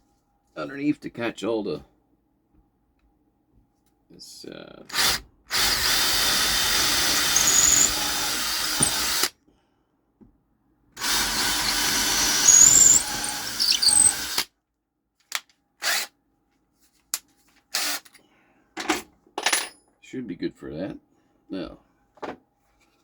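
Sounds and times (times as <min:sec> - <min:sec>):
power drill boring: 0:04.9 - 0:09.3, 0:11.0 - 0:14.5, 0:15.8 - 0:16.1, 0:17.8 - 0:18.0.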